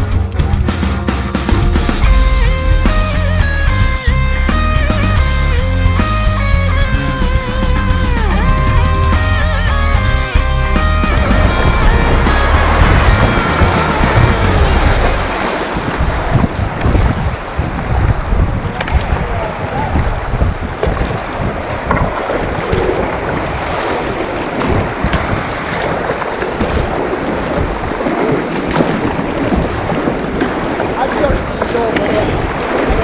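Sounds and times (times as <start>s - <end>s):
rushing whitewater: 0.3s - 33.0s
wind buffeting microphone: 7.8s - 33.0s.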